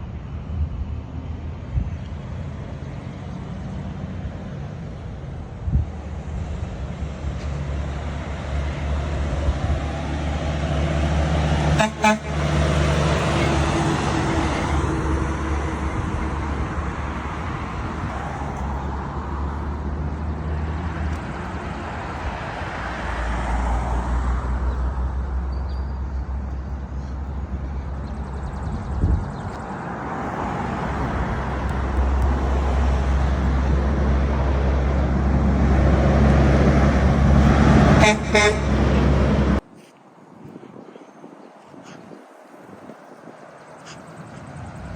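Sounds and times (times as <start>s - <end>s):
traffic passing on road: 0.0s - 44.9s
vehicle horn: 11.7s - 12.7s, 37.9s - 39.1s.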